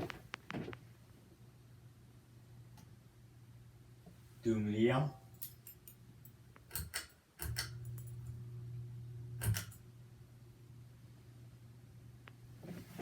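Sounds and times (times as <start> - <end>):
ceiling fan motor humming: 0.0 - 13.0
pull-chain switch clicks: 6.6 - 8.4, 9.4 - 9.8.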